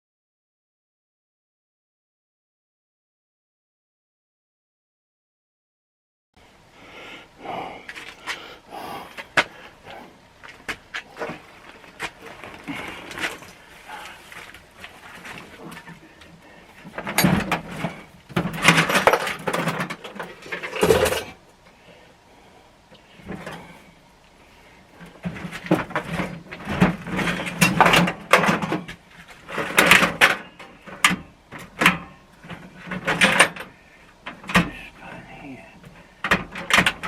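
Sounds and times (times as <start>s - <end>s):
metal hand tools clattering: 17.0s - 21.4s.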